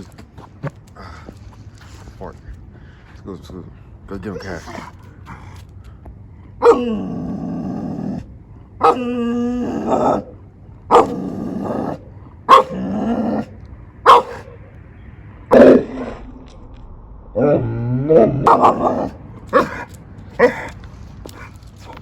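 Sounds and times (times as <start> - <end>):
large dog barking and growling: 4.1 - 5.7, 6.5 - 14.8, 15.4 - 22.0.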